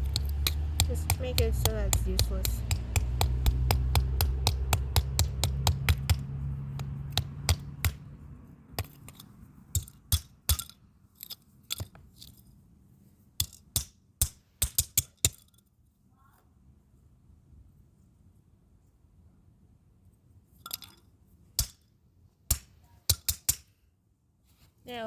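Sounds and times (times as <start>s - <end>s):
pins snapping off with clicks: 0.0s - 8.0s
low hum: 0.0s - 8.5s.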